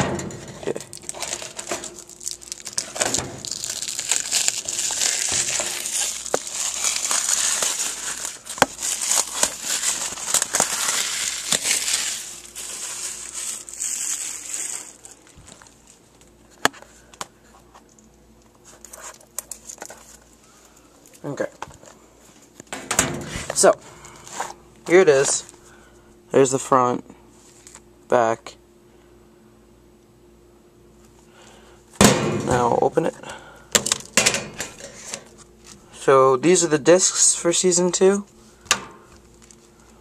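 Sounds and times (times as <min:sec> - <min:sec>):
plastic shrink-wrap crinkling: 0:00.5 - 0:16.3, 0:39.0 - 0:40.0.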